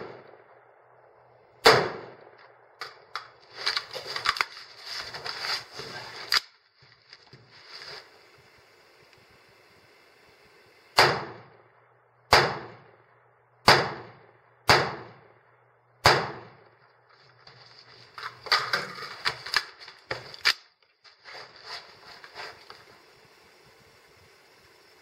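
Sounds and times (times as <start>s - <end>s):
rifle shots echoing: 0.0s - 3.2s, 11.0s - 16.8s.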